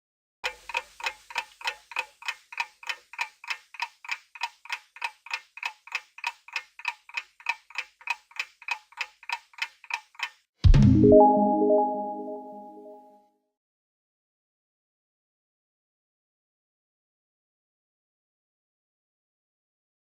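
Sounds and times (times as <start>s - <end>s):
clock ticking: 0.4s - 10.5s.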